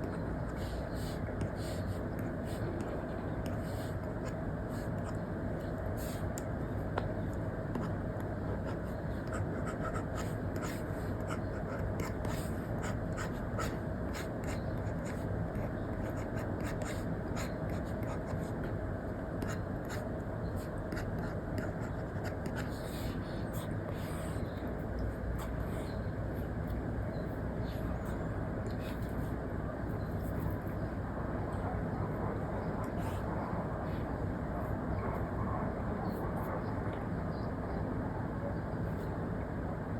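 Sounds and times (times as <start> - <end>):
stylus scratching and tapping: 0.0 - 25.9.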